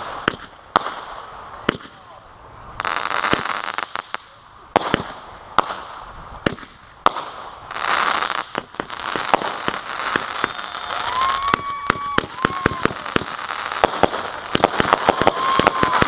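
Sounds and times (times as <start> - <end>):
fireworks bangs: 0.0 - 16.0
fireworks crackling: 0.0 - 16.0
fireworks rushing hiss: 0.0 - 16.0
rising whistle: 10.2 - 13.1.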